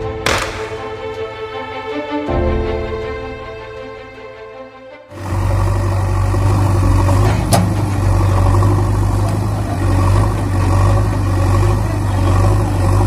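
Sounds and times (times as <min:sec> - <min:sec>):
engine idling: 0:05.2 - 0:13.0.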